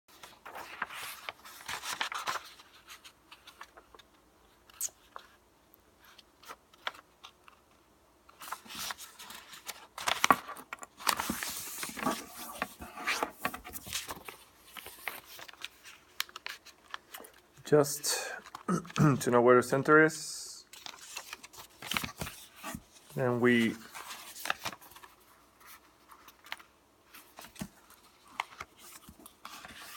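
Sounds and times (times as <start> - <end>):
paper rustling and creasing: 0.1 - 5.4, 6.0 - 17.6, 18.4 - 19.3, 20.7 - 29.9
paper crinkles and taps: 8.4 - 12.8, 13.4 - 17.4.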